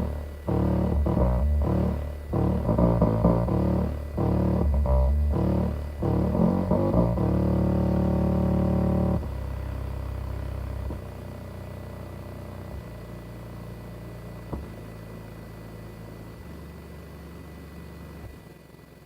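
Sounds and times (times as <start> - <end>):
deep bass notes from music: 0.0 - 13.3.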